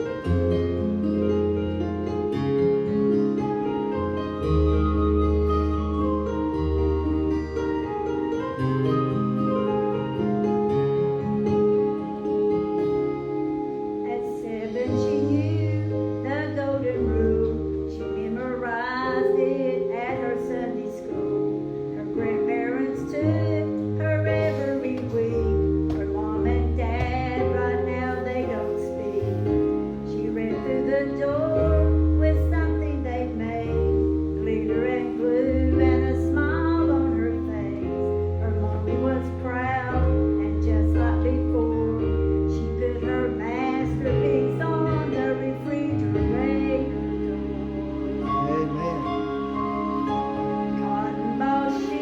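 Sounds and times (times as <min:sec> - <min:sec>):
steady bass line: 0:00.0 - 0:13.4, 0:25.0 - 0:34.3, 0:35.3 - 0:51.6
instrumental accompaniment: 0:00.0 - 0:52.0
person singing worship song: 0:47.8 - 0:49.4.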